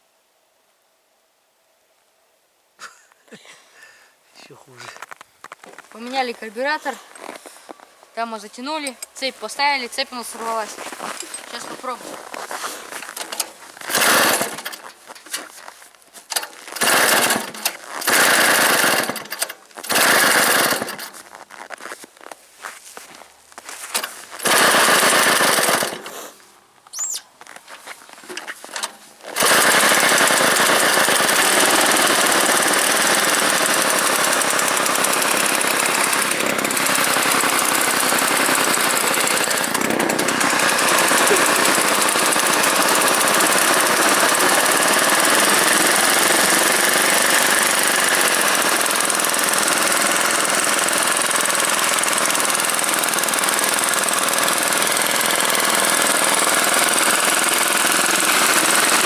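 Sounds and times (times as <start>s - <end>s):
two-stroke engine running: 8.2s - 21.6s, 23.6s - 26.3s, 28.3s - 59.0s.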